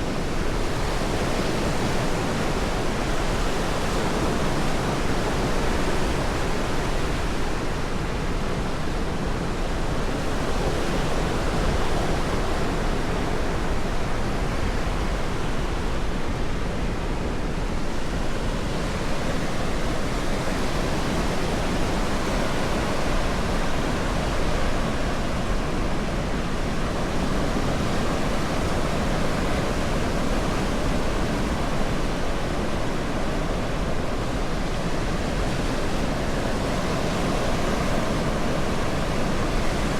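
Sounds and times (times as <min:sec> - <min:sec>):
ocean surf breaking on beach: 0:00.0 - 0:39.9.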